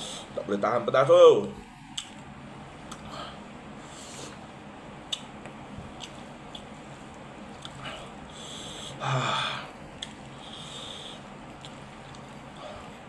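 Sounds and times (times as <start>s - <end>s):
person sniffing and hissing breath: 0.0s - 0.4s, 3.0s - 4.4s, 7.8s - 11.3s.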